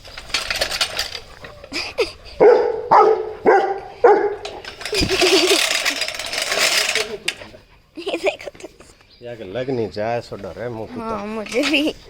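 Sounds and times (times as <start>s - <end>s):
puppy barking: 2.4s - 4.5s.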